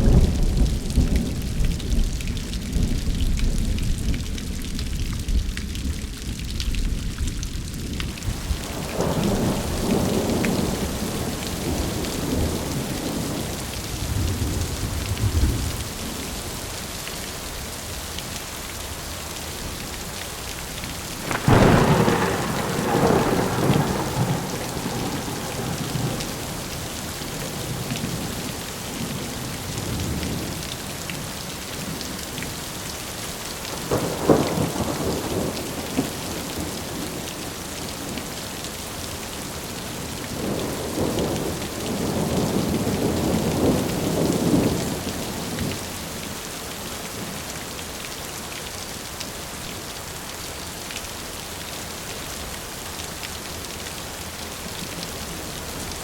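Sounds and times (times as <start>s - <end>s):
steady rain: 0.0s - 56.0s
thunder rumbling: 21.1s - 28.4s.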